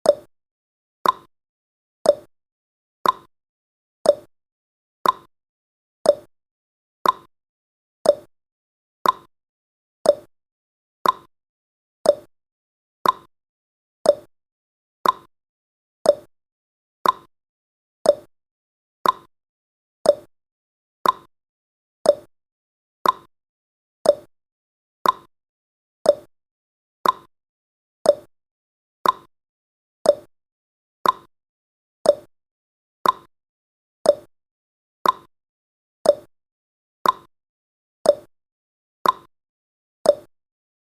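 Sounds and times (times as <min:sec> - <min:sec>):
clock-like ticking: 0:01.0 - 0:01.3, 0:02.1 - 0:02.3, 0:03.0 - 0:03.3, 0:04.1 - 0:04.3, 0:05.0 - 0:05.3, 0:06.1 - 0:06.3, 0:07.0 - 0:07.3, 0:08.1 - 0:08.3, 0:09.0 - 0:09.3, 0:10.1 - 0:10.3, 0:11.0 - 0:11.3, 0:12.1 - 0:12.3, 0:13.0 - 0:13.3, 0:14.1 - 0:14.3, 0:15.0 - 0:15.3, 0:16.1 - 0:16.3, 0:17.0 - 0:17.3, 0:18.0 - 0:18.3, 0:19.0 - 0:19.3, 0:20.1 - 0:20.3, 0:21.0 - 0:21.3, 0:22.0 - 0:22.3, 0:23.0 - 0:23.3, 0:24.0 - 0:24.3, 0:25.0 - 0:25.3, 0:26.0 - 0:26.3, 0:27.0 - 0:27.3, 0:28.0 - 0:28.3, 0:29.0 - 0:29.3, 0:30.0 - 0:30.3, 0:31.0 - 0:31.3, 0:32.1 - 0:32.3, 0:33.0 - 0:33.3, 0:34.1 - 0:34.3, 0:35.0 - 0:35.3, 0:36.0 - 0:36.3, 0:37.0 - 0:37.3, 0:38.1 - 0:38.3, 0:39.0 - 0:39.3, 0:40.1 - 0:40.3.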